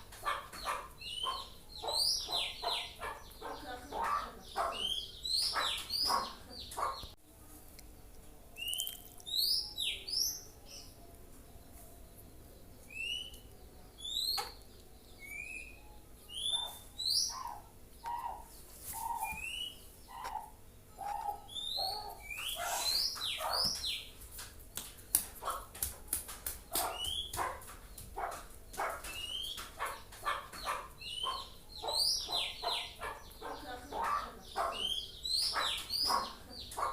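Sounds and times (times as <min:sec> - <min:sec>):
harsh falling bird calls: 0:26.7 - 0:36.9.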